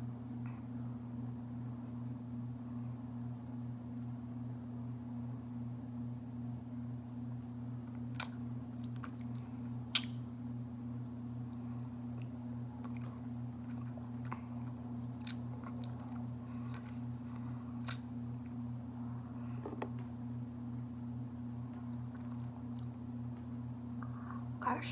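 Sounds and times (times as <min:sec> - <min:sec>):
steady low hum: 0:00.0 - 0:24.9
mouth clicks and smacks: 0:08.2 - 0:10.2, 0:17.8 - 0:18.1
wet chewing: 0:08.2 - 0:10.2, 0:11.8 - 0:18.2, 0:21.7 - 0:23.0.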